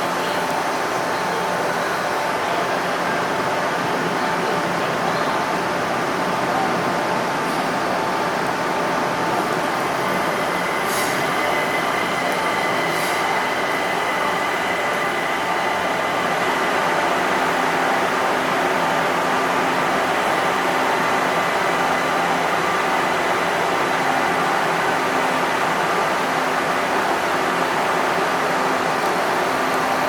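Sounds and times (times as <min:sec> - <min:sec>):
train humming: 0:00.0 - 0:30.0
air hissing: 0:10.8 - 0:11.4.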